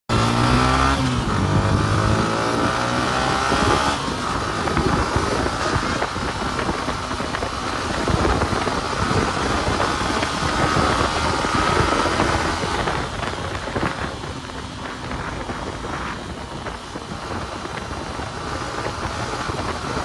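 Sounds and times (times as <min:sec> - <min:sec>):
vehicle engine running: 0:00.1 - 0:20.0
wind buffeting microphone: 0:00.1 - 0:20.0.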